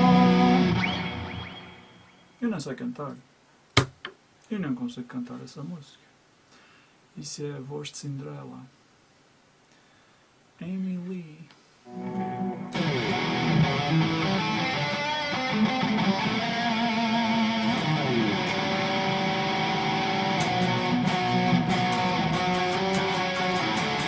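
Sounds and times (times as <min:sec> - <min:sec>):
electric guitar notes ringing: 0:00.0 - 0:02.4, 0:11.9 - 0:24.0.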